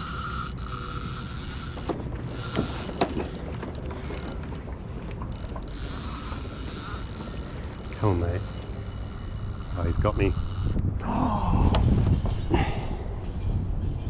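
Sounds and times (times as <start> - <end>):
fishing reel drag clicking: 0.0 - 10.8.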